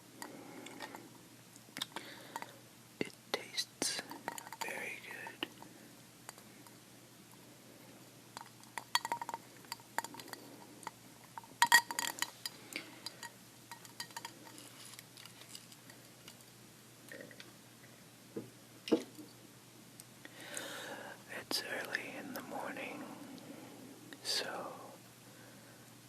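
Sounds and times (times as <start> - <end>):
ice cubes clinking in a glass: 13.2 - 15.6.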